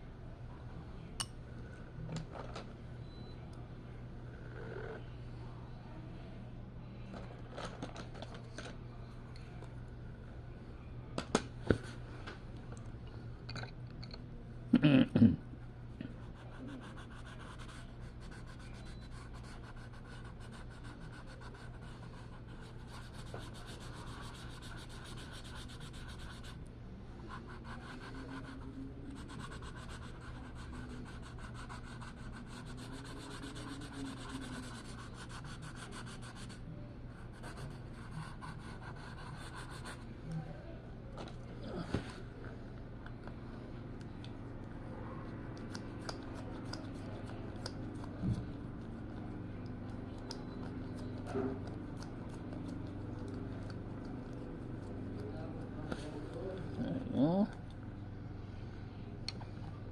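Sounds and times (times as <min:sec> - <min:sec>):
low steady hum: 0:00.0 - 0:59.9.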